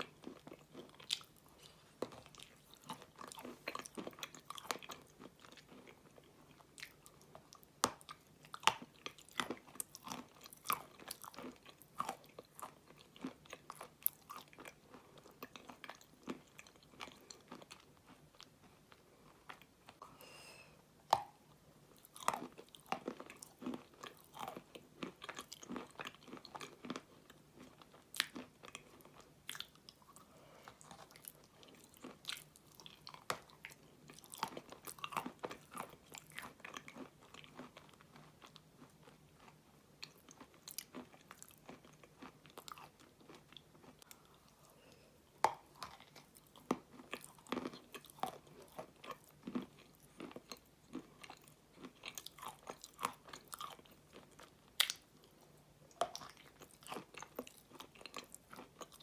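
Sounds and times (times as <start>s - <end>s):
chewing and mouth smacks: 0.0s - 20.1s, 22.0s - 44.7s, 45.4s - 59.0s
person eating ice cream: 22.0s - 59.0s.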